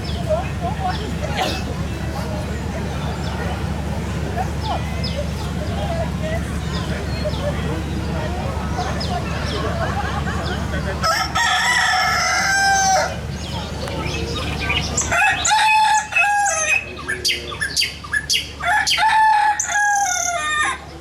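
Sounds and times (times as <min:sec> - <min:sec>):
clucks and chirps: 0:04.4 - 0:21.0
rooster crowing: 0:11.0 - 0:13.2, 0:15.1 - 0:16.9, 0:18.6 - 0:20.8.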